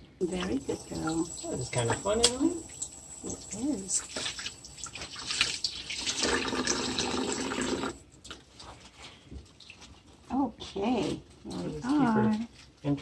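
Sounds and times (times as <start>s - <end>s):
water splashing and trickling: 0.2s - 10.3s.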